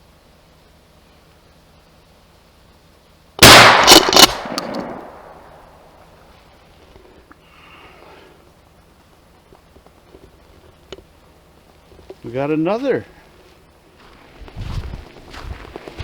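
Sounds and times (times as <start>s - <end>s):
gunshots: 3.4s - 5.4s.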